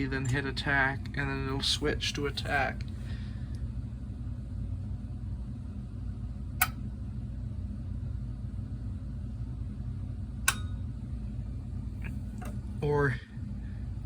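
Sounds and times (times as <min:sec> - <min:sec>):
steady low hum: 0:00.0 - 0:14.0
switch click: 0:10.4 - 0:10.7.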